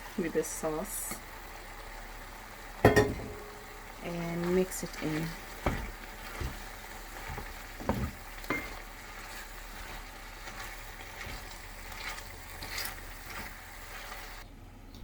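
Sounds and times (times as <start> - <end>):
sauce sizzling in a pan: 0.0 - 14.4
spoon knocking against pan: 2.8 - 3.7, 7.3 - 8.8.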